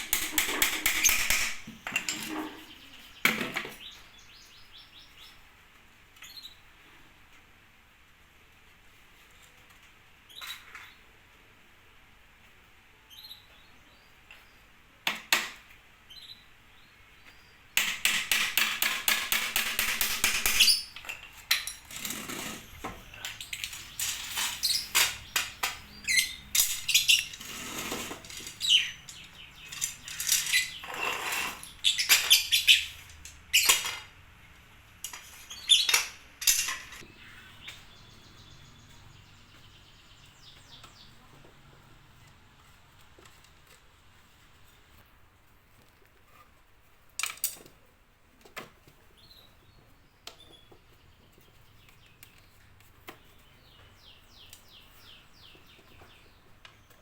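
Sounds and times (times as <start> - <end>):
knocks and scrapes: 0.0 - 3.8, 17.8 - 34.1.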